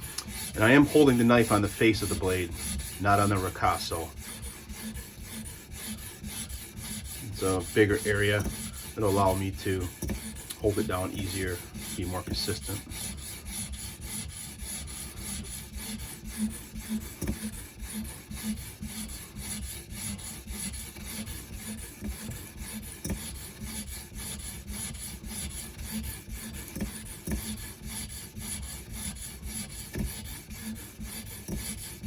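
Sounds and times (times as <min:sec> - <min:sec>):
knife rasping on sharpening stone: 0:04.1 - 0:21.4.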